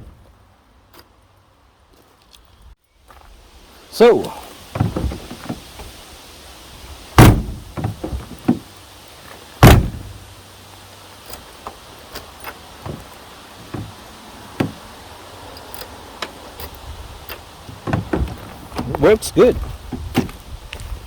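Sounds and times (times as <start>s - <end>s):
car door shutting: 4.7s - 5.9s, 7.2s - 8.7s, 9.6s - 10.2s, 12.1s - 14.0s, 14.6s - 14.9s, 17.7s - 20.4s.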